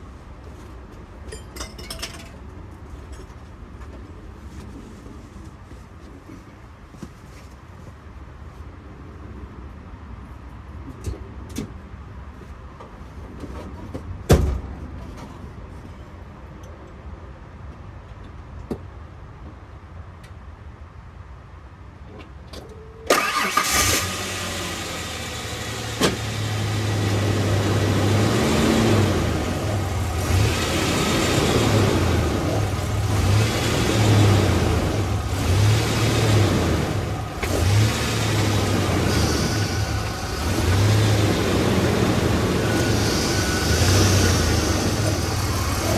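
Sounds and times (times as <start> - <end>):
car engine starting and running: 23.1 - 45.9.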